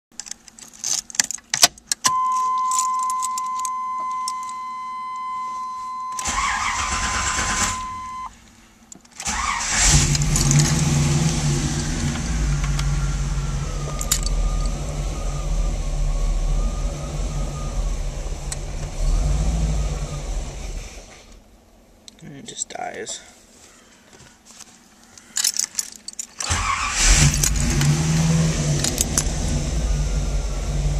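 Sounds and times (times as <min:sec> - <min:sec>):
keys rattling: 0:00.2 - 0:06.7, 0:09.9 - 0:10.9, 0:13.8 - 0:14.9, 0:25.1 - 0:27.9, 0:28.7 - 0:29.4
car engine cranking: 0:00.2 - 0:08.3, 0:09.1 - 0:21.2, 0:25.4 - 0:30.9
steady warning tone: 0:02.1 - 0:08.3, 0:11.5 - 0:20.3.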